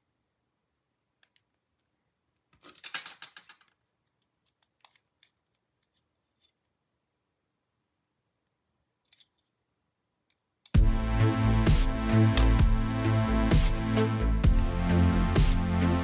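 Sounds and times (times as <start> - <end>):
plastic parts clicking: 2.5 - 6.7, 9.0 - 9.5.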